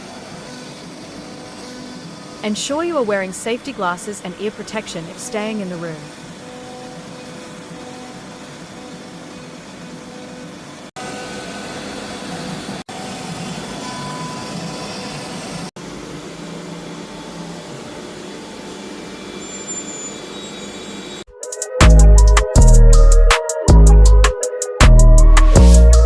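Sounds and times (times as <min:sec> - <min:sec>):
dust collector running: 0:11.0 - 0:21.2
music: 0:21.3 - 0:26.0.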